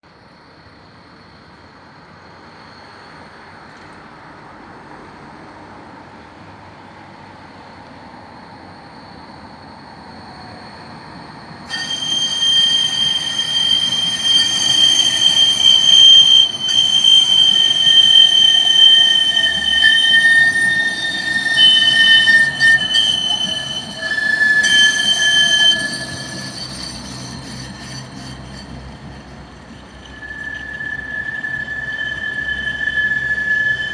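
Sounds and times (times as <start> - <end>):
tram wheels squealing on rails: 7.5 - 33.9
tram rumble: 10.0 - 33.9.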